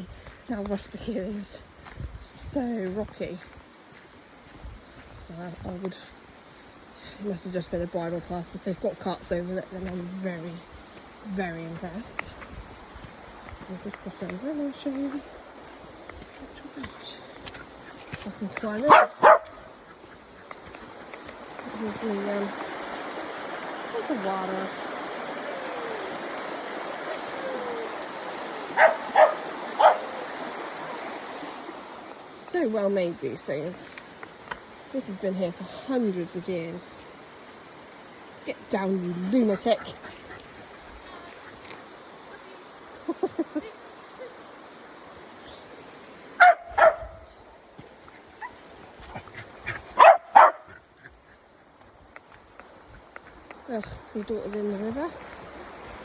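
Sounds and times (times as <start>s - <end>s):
stream running over rocks: 0.0s - 56.0s
dog barking: 18.9s - 19.7s, 28.7s - 30.2s, 46.4s - 47.3s, 50.0s - 50.7s.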